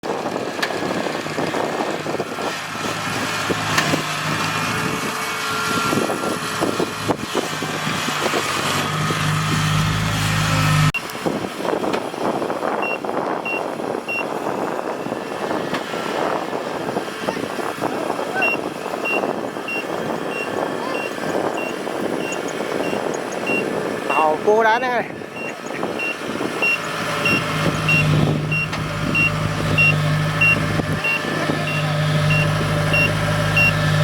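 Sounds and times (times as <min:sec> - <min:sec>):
diesel engine hum: 0:00.0 - 0:34.0
short high beeps: 0:25.4 - 0:33.8.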